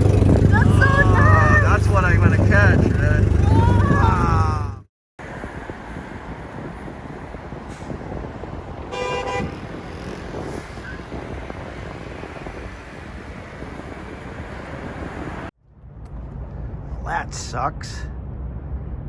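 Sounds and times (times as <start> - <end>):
road traffic noise: 0.0 - 15.5
vehicle horn toot: 8.9 - 9.6.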